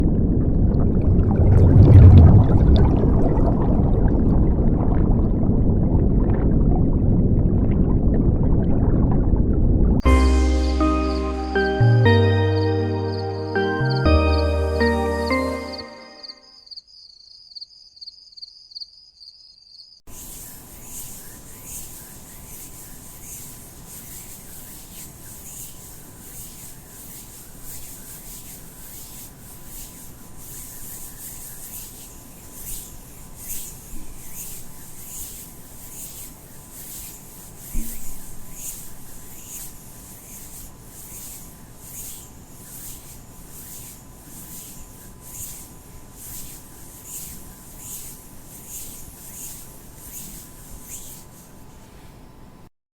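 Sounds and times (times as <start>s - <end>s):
scratchy rubbing strokes: 20.1s - 52.2s
faint steady hum: 20.1s - 52.7s.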